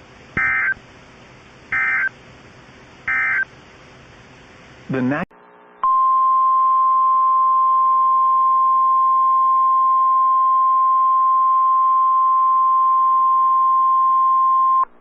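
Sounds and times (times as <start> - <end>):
high-pitched alarm tone: 1.8 - 2.1, 3.1 - 3.5.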